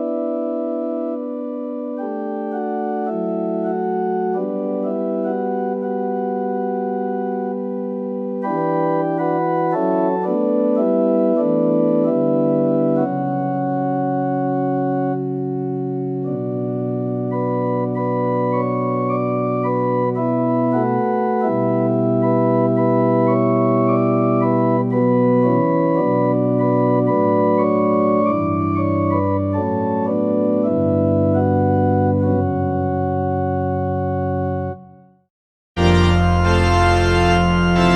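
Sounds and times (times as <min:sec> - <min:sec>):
organ playing slow held chords: 0:00.0 - 0:35.0, 0:35.8 - 0:37.9.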